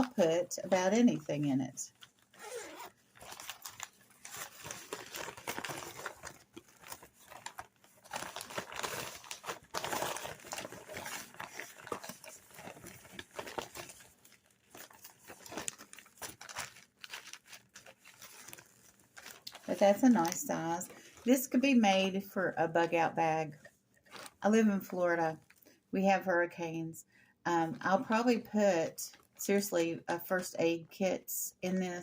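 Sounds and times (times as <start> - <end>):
packaging crinkling: 1.9 - 21.4, 24.0 - 24.4.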